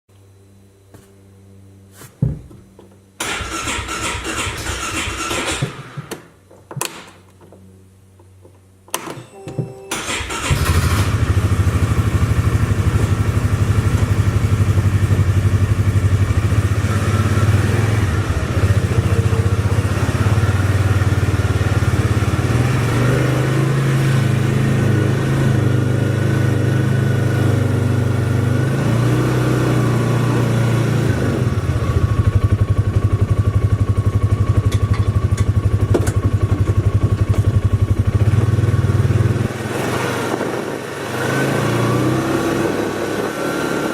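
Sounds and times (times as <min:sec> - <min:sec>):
small engine droning: 0:10.0 - 0:43.9.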